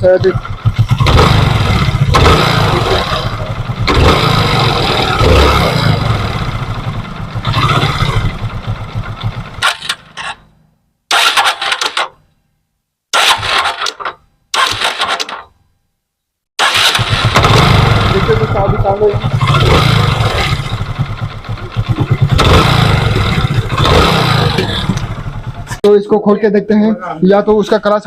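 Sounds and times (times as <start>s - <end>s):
motorcycle engine revving: 0.0s - 10.5s, 11.1s - 12.1s, 13.2s - 14.0s, 14.6s - 15.4s, 16.6s - 25.8s.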